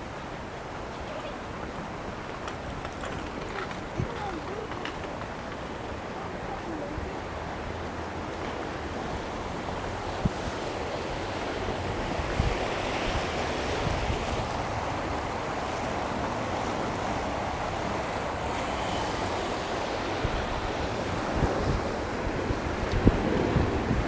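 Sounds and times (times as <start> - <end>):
river flowing: 5.4 - 24.0
wind thumps on microphone: 20.2 - 24.0.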